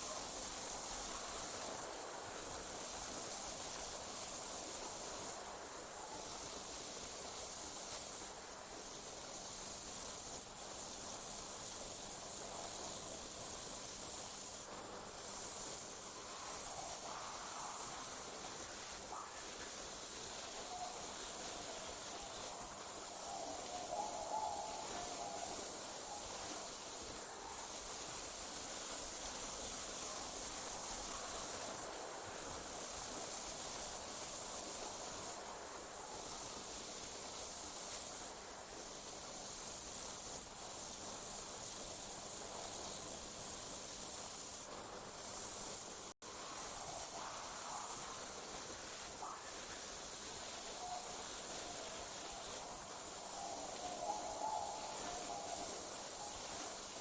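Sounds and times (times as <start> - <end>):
crickets trilling: 0.0 - 57.0.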